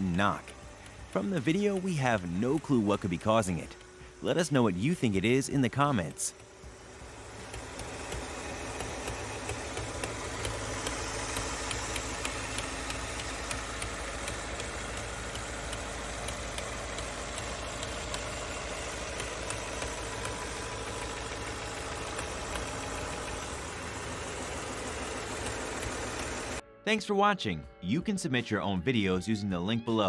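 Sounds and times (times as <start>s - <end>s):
truck engine running: 0.0s - 26.6s
light irregular engine knocks: 6.3s - 26.6s.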